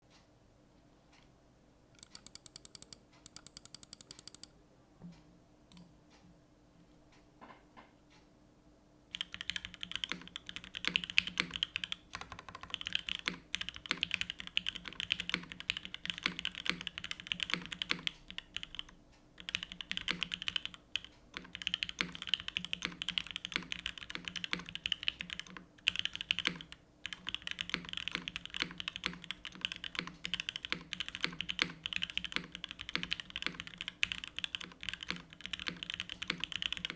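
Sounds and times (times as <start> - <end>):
mechanical keyboard typing: 2.0 - 4.5, 9.1 - 36.9.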